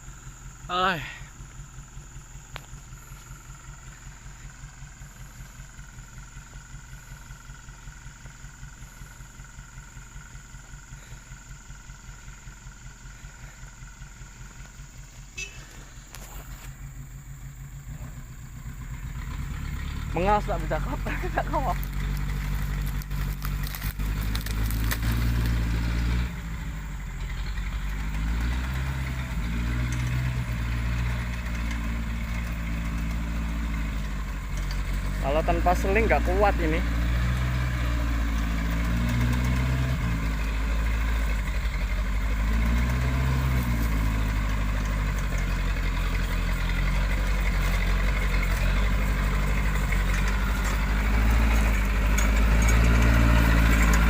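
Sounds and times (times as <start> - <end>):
diesel engine idling: 0.0 - 54.0
sharp crackling clicks: 21.7 - 25.6.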